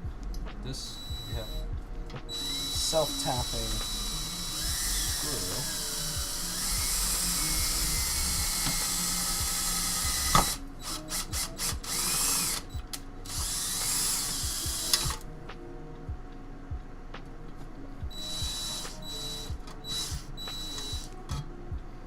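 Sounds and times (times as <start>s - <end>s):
power drill driving screw into metal: 2.3s - 12.7s, 13.3s - 15.2s, 18.2s - 21.1s.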